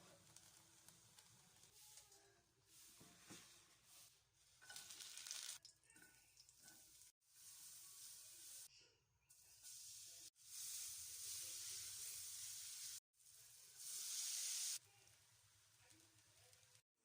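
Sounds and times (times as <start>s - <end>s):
food sizzling in a hot pan: 3.8s - 5.6s, 6.5s - 8.7s, 9.3s - 16.8s.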